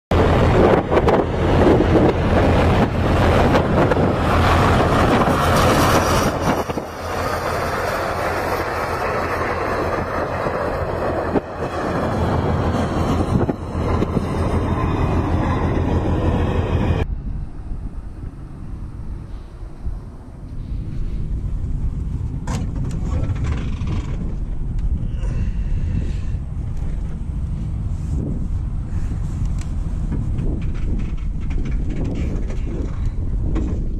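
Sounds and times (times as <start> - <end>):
loud rushing noise: 0.1 - 23.1
heavy vehicle rumble: 0.1 - 33.9.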